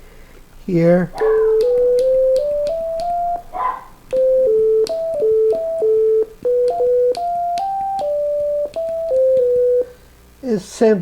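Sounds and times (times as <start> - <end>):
note onset clicks: 1.3 - 3.5, 4.1 - 9.9
synthesizer sine tone notes: 1.4 - 3.5, 4.1 - 10.0.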